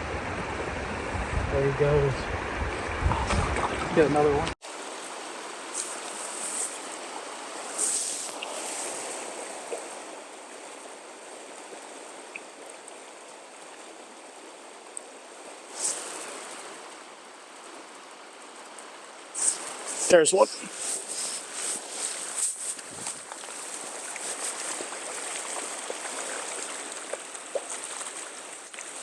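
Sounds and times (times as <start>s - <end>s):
stream water running: 0.0s - 29.0s.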